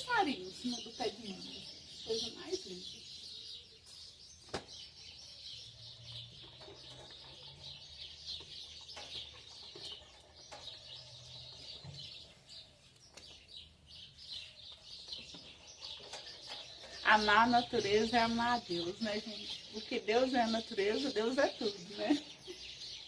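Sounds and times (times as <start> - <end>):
small birds chirping: 0.0 - 23.0.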